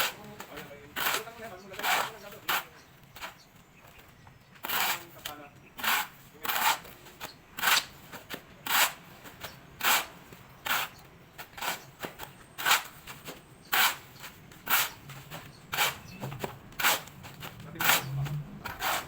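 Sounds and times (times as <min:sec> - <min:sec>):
shovel scraping wet concrete: 0:00.0 - 0:03.4, 0:04.6 - 0:19.0.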